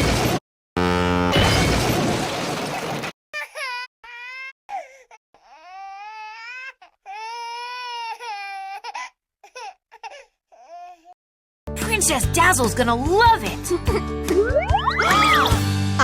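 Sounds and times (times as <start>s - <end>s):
high-pitched voice crying: 13.9s - 15.6s.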